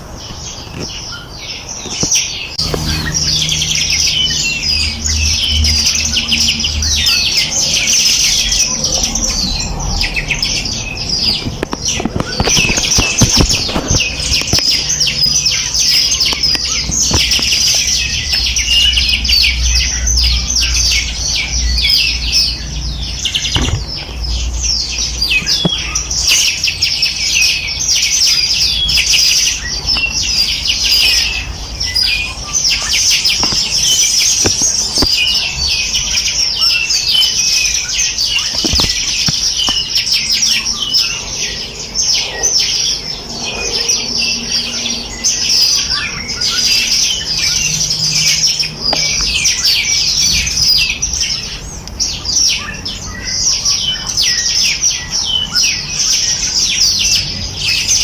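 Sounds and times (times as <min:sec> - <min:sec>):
small birds chirping and twittering: 0:00.0 - 0:58.0.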